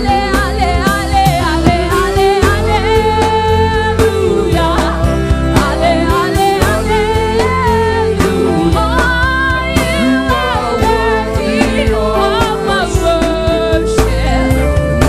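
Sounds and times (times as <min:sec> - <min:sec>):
band playing gospel music: 0:00.0 - 0:15.0
keyboard chords: 0:00.0 - 0:15.0
drum hits: 0:00.6 - 0:02.7.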